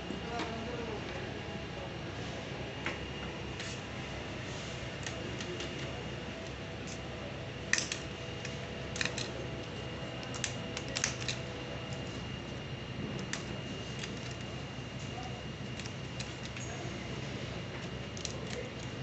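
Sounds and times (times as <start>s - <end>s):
faint hum: 0.0s - 19.0s
small parts clicking: 7.7s - 8.1s, 8.9s - 9.4s, 10.2s - 11.4s.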